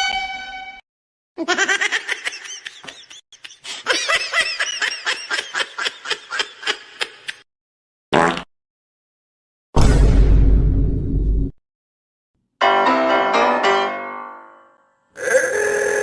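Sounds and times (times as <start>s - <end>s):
comic high-pitched laugh: 1.4s - 7.4s.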